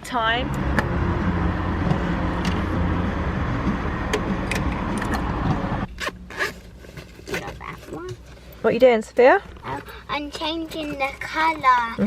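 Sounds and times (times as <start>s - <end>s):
car engine and road noise: 0.0s - 12.0s.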